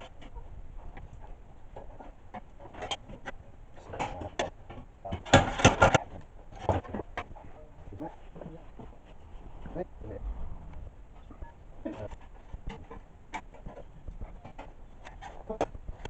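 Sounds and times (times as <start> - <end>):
sheet metal knocking and clatter: 3.9 - 7.3.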